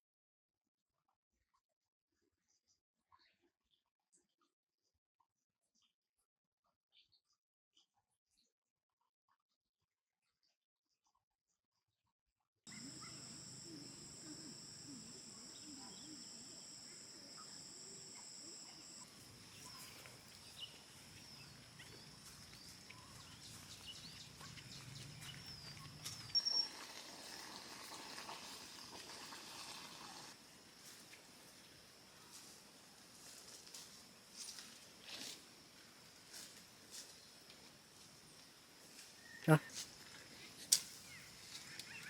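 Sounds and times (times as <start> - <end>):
insect trill: 12.7 - 42.0.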